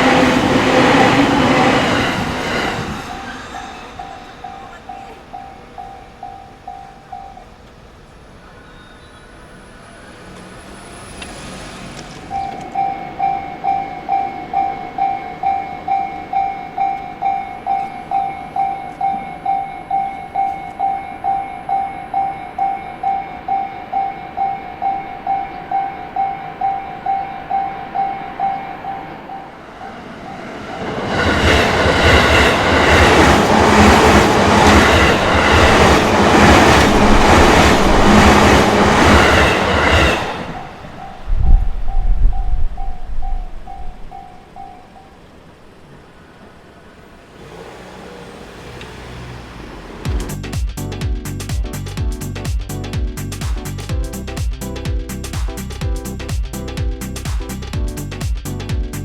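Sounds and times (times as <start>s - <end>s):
train wheels clacking over rails: 0.0s - 7.8s, 9.6s - 45.0s
level crossing bell clanging: 0.0s - 7.9s, 12.3s - 45.6s.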